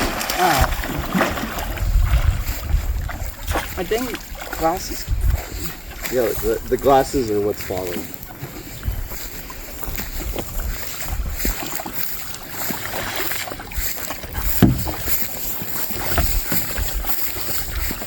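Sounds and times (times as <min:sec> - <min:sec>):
water movement around kayak: 0:00.0 - 0:18.0
wind buffeting microphone: 0:00.0 - 0:18.0
loud thump: 0:14.6 - 0:15.1.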